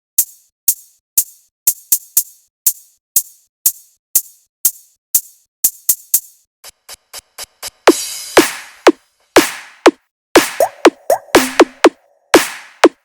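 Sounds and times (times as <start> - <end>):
drum machine hits: 0.2 - 13.0
electronic dance music: 6.6 - 13.0.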